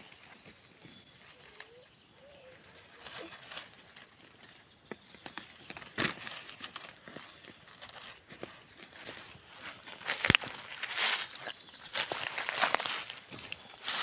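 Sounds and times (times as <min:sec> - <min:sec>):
rustling through undergrowth: 0:00.0 - 0:14.0
twigs snapping: 0:02.6 - 0:14.0.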